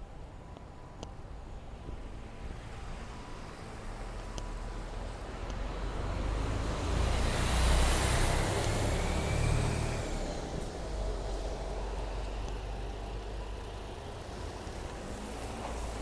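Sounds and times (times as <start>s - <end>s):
vehicle driving past: 6.0s - 10.6s.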